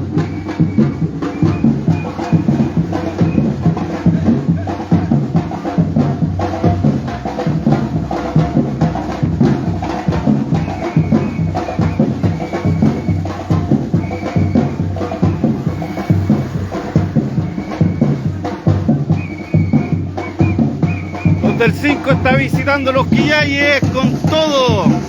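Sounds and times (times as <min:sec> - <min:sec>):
percussion group drumming: 0:00.0 - 0:25.0.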